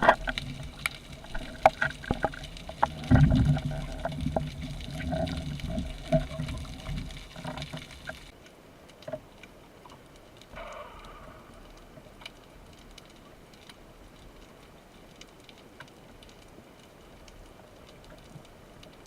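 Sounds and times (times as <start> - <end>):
water sloshing and bubbling: 0.0 - 19.0
low rumbling: 10.5 - 12.7.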